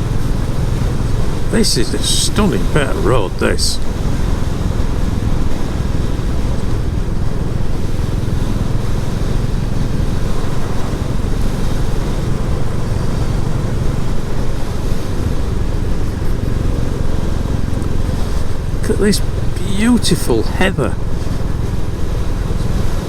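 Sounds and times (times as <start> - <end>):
wind rush over microphone: 3.8 - 19.6.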